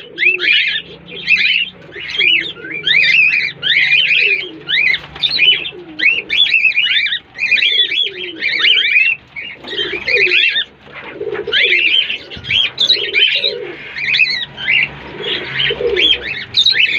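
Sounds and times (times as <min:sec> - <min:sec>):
caged birds chirping: 0:00.0 - 0:16.9
low gliding bird calls: 0:00.0 - 0:16.9.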